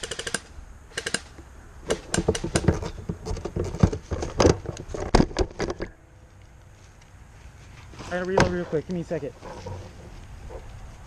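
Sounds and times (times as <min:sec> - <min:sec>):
airsoft gun rapid burst: 0:00.0 - 0:01.3.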